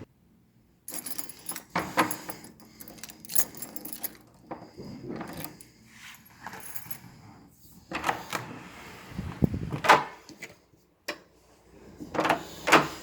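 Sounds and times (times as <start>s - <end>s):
objects being handled: 0.9s - 7.2s.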